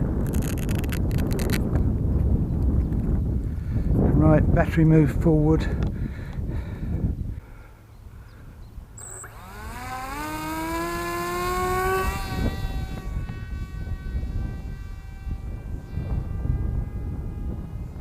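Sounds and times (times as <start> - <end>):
electric model plane motor whine: 0.0 - 3.9, 8.4 - 18.0
wind rumbling on microphone: 0.0 - 18.0.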